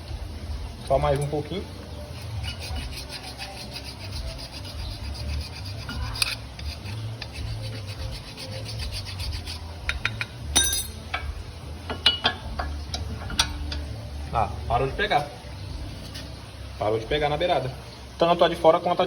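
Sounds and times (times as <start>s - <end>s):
hand file rasping: 2.1s - 9.8s.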